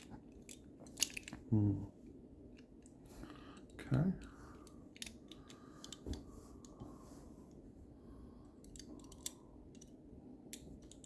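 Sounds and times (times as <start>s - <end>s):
lock picks clicking in a lock: 8.6s - 11.0s.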